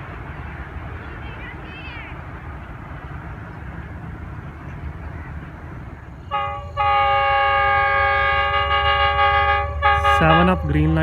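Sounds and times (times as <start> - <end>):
train rumble: 0.0 - 11.0
locomotive air horn: 6.3 - 11.0.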